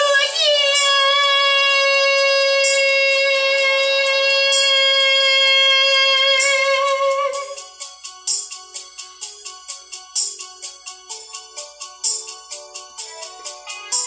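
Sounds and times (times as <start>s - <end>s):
choppy rhythmic accompaniment: 0.0s - 14.0s.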